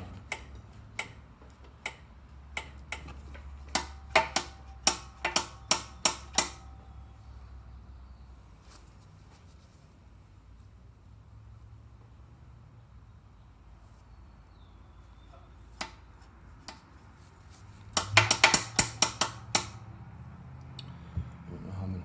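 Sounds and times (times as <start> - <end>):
metallic taps of hand tools: 0.2 - 6.7, 17.9 - 19.8.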